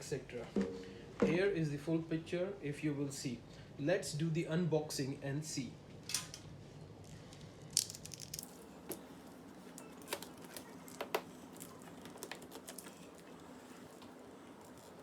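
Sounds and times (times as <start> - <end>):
packaging clicks taps and rustles: 7.7 - 15.0.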